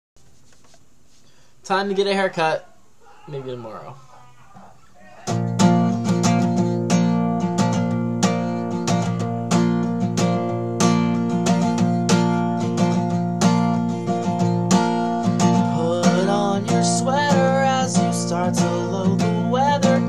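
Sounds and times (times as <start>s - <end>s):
acoustic guitar strumming chords: 5.3s - 20.0s.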